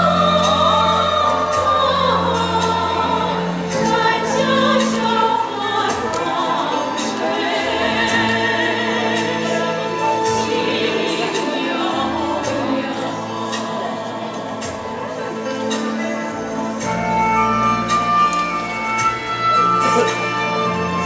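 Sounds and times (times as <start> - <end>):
choir-like singing: 0.0 - 21.0
orchestral accompaniment: 0.0 - 21.0.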